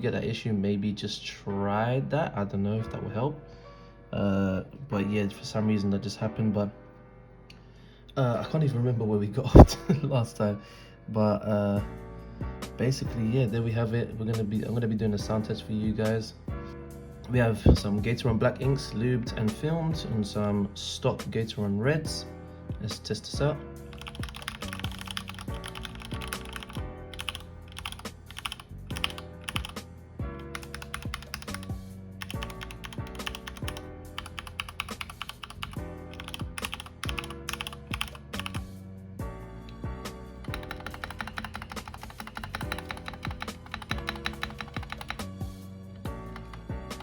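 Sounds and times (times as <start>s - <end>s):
background music: 0.0s - 47.0s
mechanical keyboard keystroke clacks: 24.0s - 29.8s, 32.2s - 38.7s, 40.4s - 45.3s.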